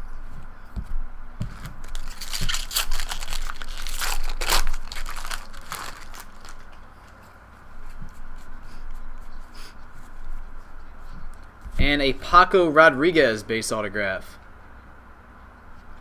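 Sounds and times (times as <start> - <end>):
card pack wrapper crinkling: 1.8 - 7.2.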